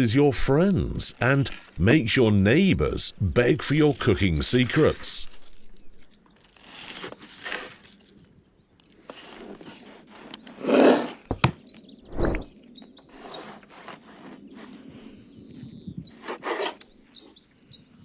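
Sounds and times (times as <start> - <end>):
small birds chirping: 8.6 - 13.6, 15.2 - 18.0
dull thud: 11.3 - 12.5
handling knocks: 11.3 - 12.5.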